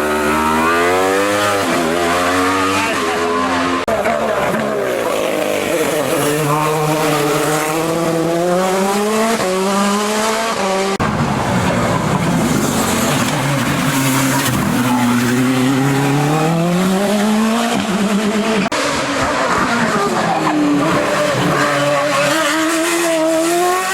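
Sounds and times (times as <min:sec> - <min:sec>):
race car engine at high revs: 0:00.0 - 0:23.9.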